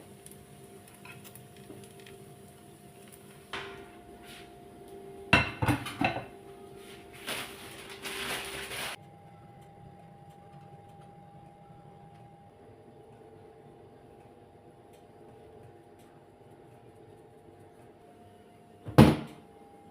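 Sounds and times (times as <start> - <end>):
faint steady hum: 0.0 - 19.9
dishes and utensils clinking: 5.4 - 6.3
scraping or rustling noise: 6.8 - 9.0.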